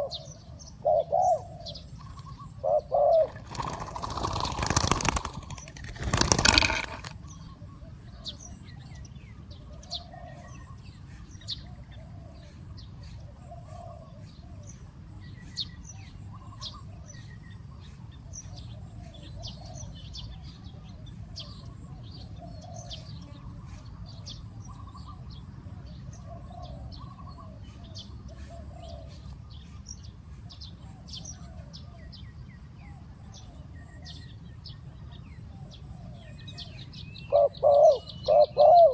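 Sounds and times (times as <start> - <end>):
dove cooing: 0.0 - 8.3, 9.7 - 10.8, 11.5 - 14.9, 18.8 - 20.7, 21.4 - 23.8, 26.2 - 29.5, 35.5 - 38.9
small birds chirping: 0.0 - 38.9.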